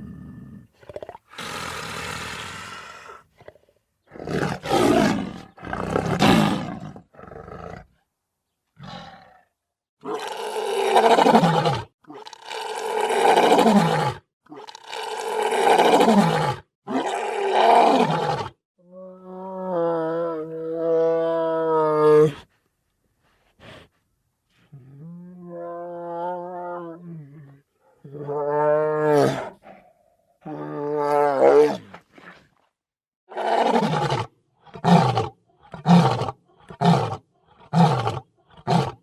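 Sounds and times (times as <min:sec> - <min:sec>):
big cat roaring: 0:04.2 - 0:07.9, 0:08.8 - 0:22.4, 0:24.8 - 0:32.3.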